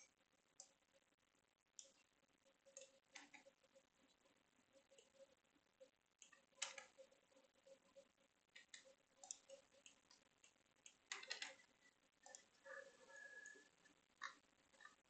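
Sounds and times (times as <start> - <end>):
mouse and keyboard clicks: 2.7 - 3.6, 6.2 - 7.1, 8.6 - 12.5.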